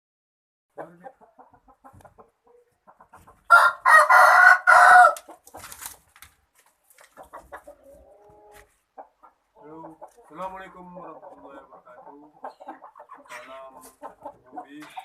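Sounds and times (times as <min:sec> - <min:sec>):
faint clucks: 0:00.7 - 0:03.5, 0:06.6 - 0:15.0
rooster crowing: 0:03.5 - 0:05.3.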